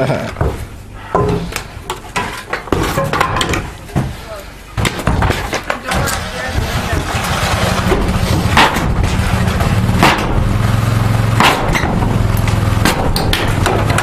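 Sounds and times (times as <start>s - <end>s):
heavy blows on wooden boards: 0.3s - 14.0s
low engine hum: 6.9s - 14.0s
wood knocking and cracking: 11.4s - 14.0s.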